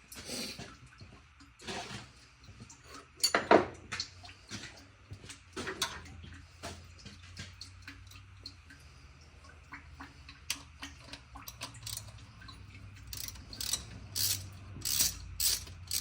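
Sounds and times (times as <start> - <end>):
tools and metal parts clinking: 2.9 - 3.7, 11.5 - 12.1, 13.1 - 16.0.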